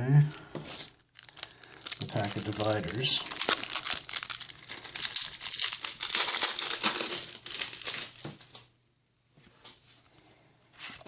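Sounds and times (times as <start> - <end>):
wrapper crinkling and tearing: 0.7 - 8.7.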